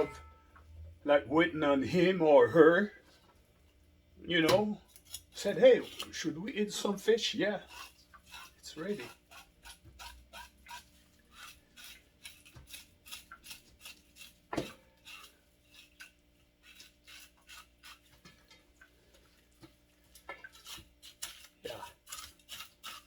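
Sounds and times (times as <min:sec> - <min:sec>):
knife scraping fish scales: 0:04.8 - 0:18.6, 0:20.1 - 0:23.0.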